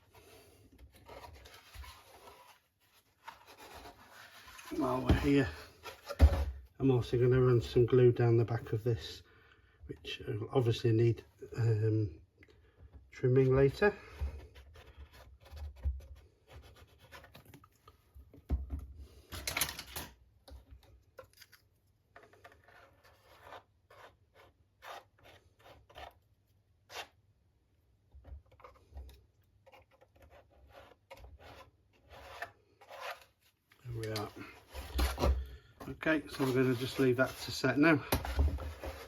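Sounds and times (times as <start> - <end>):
scratching and rubbing on wood: 0.9 - 6.2, 22.2 - 26.2, 29.6 - 39.0.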